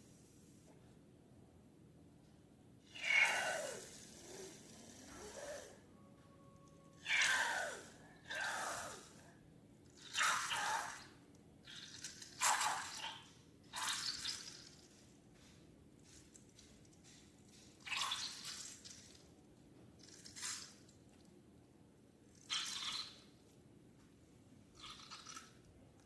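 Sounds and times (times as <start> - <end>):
slime squelching out of balloons: 10.0 - 15.0.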